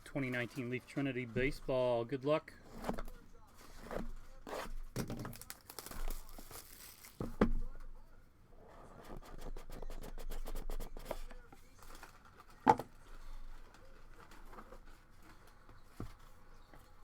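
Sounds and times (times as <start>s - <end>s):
plastic wrapping crinkling and tearing: 3.6s - 7.4s.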